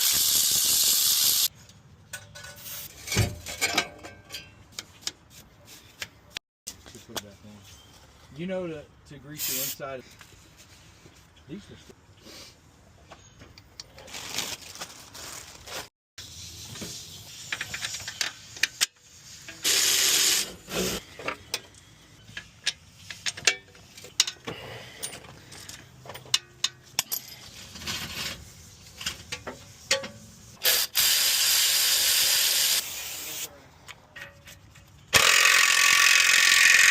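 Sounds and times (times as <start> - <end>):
metal clinks and knocks: 21.3 - 28.3
ratchet clicking: 35.2 - 36.9.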